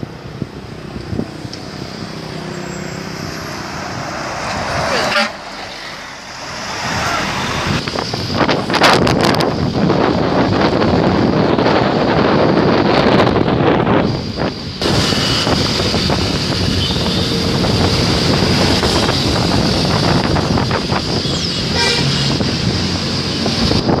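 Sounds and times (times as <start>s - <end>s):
wind noise on microphone: 0.0s - 5.0s, 6.5s - 24.0s
road traffic passing: 0.0s - 24.0s
bus multi-tone horn: 4.9s - 5.6s, 16.7s - 17.8s, 21.2s - 22.4s.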